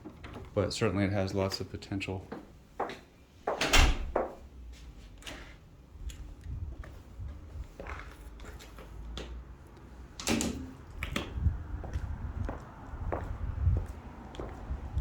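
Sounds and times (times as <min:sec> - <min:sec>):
footsteps rumble: 0:00.0 - 0:10.0, 0:10.8 - 0:15.0
door being opened: 0:03.5 - 0:04.4.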